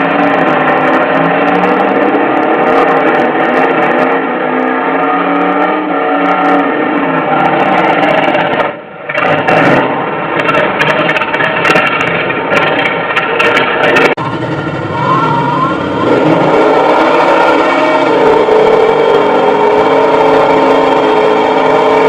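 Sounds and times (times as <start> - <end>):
car engine revving hard: 0.0 - 11.8, 14.0 - 22.0
engine crackles: 7.4 - 22.0.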